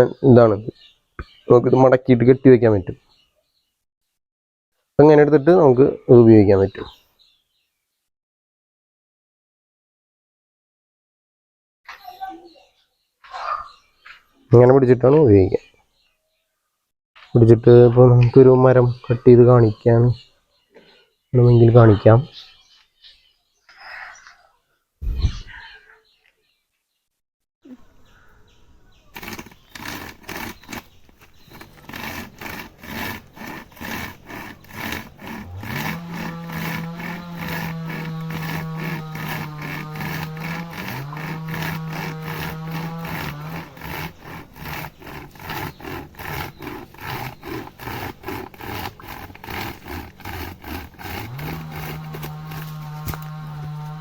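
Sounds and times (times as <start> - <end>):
chain saw rasping through branch: 29.2 - 54.0
engine hum: 29.2 - 54.0.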